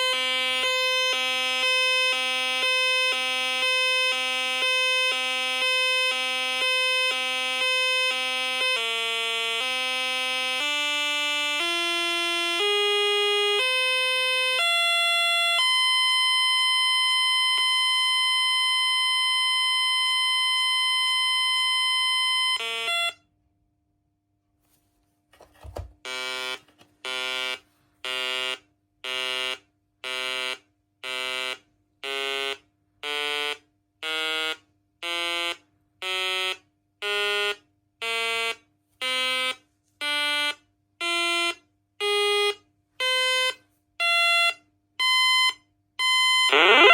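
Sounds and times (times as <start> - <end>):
steady electronic alarm tone: 0.0 - 15.0, 26.1 - 46.9
pulsed alarm beeps: 44.1 - 46.9
alarm stepped tones: 45.0 - 46.9.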